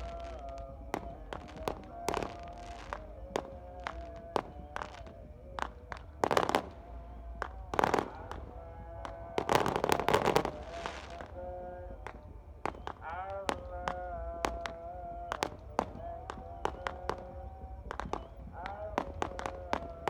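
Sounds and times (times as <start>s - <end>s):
firecrackers banging and crackling: 0.0s - 20.0s.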